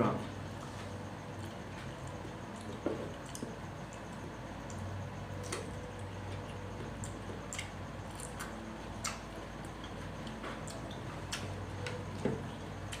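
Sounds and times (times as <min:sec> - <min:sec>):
low steady hum: 0:00.0 - 0:13.0
wet chewing clicks and crunches: 0:01.3 - 0:04.8, 0:05.4 - 0:12.0.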